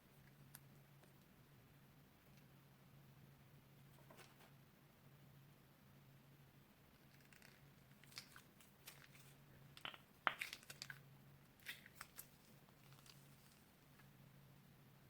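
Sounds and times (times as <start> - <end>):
crunchy slime crackling: 7.1 - 13.7.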